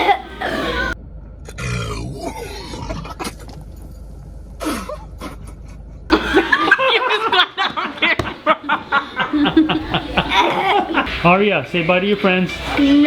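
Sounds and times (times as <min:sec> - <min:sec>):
people laughing: 0:04.6 - 0:12.6.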